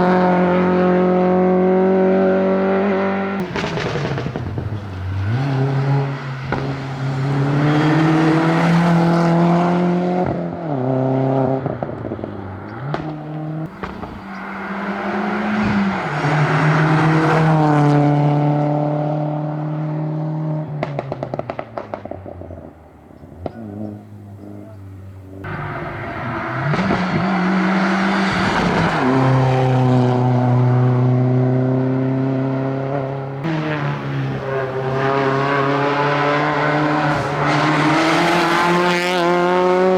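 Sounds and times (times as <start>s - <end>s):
rally cars accelerating: 0.0s - 39.9s
engine crackles: 3.4s - 7.8s, 11.7s - 18.0s.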